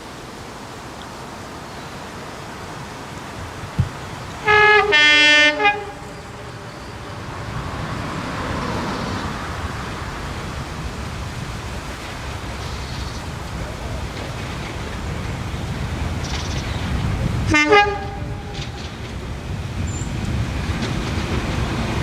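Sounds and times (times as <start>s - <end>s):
train rumble: 0.0s - 22.0s
locomotive two-tone horn: 4.4s - 7.4s, 17.4s - 19.1s.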